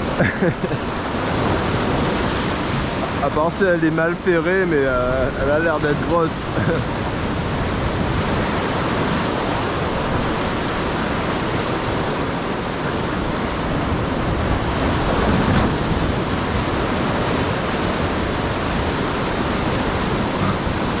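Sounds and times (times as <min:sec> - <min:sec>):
sea water noise: 0:00.0 - 0:21.0
wind rushing: 0:04.4 - 0:21.0.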